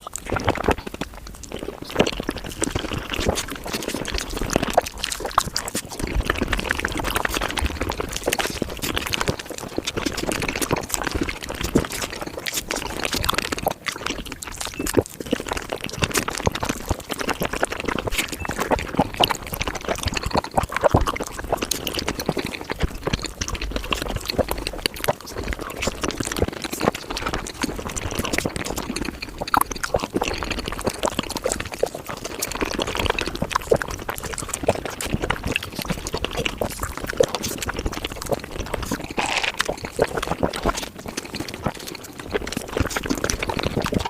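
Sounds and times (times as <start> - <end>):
wet chewing and smacking: 0.0 - 44.0.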